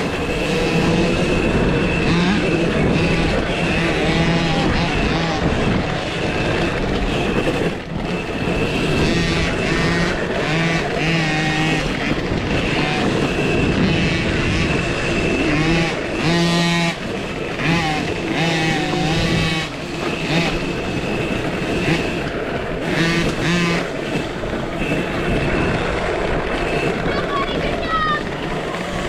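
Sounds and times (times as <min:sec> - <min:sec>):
electric motor whining: 0:00.0 - 0:29.0.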